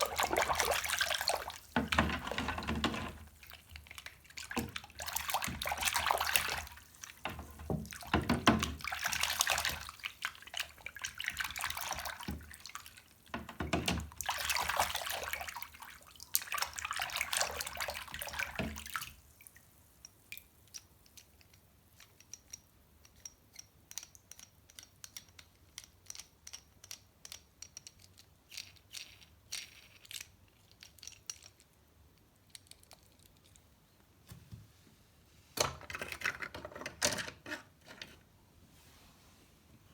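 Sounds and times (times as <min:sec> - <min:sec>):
tap water splashing in sink: 0:00.0 - 0:19.6
small sharp clicks and taps: 0:20.0 - 0:28.3.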